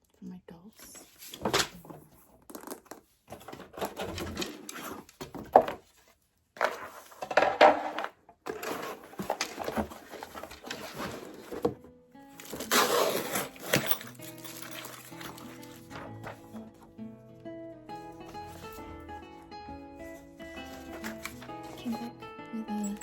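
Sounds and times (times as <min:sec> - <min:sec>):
furniture parts knocking and clattering: 0:02.0 - 0:05.9, 0:06.6 - 0:11.9.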